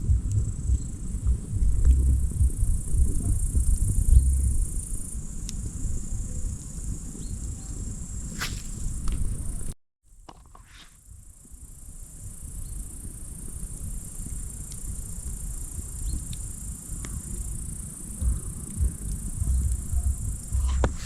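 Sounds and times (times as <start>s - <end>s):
low rumble: 0.0s - 6.0s, 18.2s - 21.0s
insects chirring: 0.0s - 21.0s
faint ticks: 12.2s - 21.0s.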